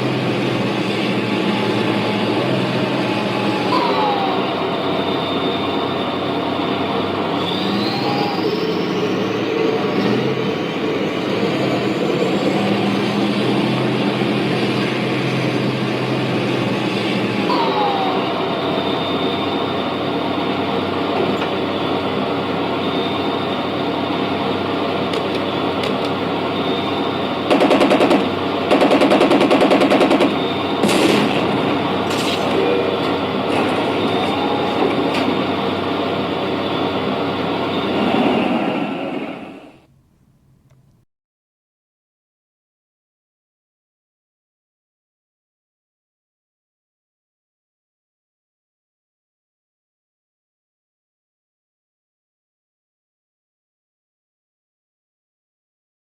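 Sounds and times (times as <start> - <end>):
tank engine sound effect: 0.0 - 39.9
machine-gun fire effect: 27.5 - 31.6.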